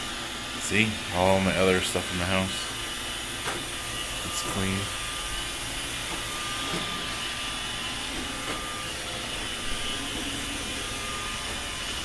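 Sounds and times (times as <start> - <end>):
robot vacuum whirring: 2.8 - 12.0.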